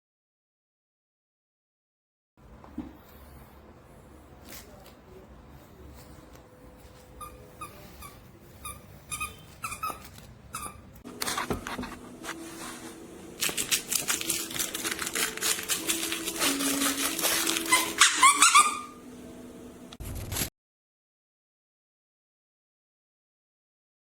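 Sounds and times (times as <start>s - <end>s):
squeaky dog toy squeaks: 7.2s - 11.0s, 17.1s - 19.0s
fabric rustling: 11.1s - 18.9s.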